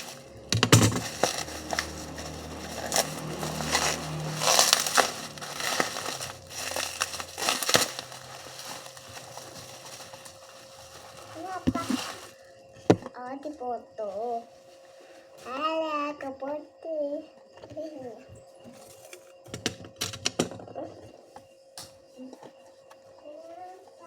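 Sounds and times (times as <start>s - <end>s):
low hum: 0.0s - 11.4s
packaging crinkling and crackling: 0.0s - 12.5s.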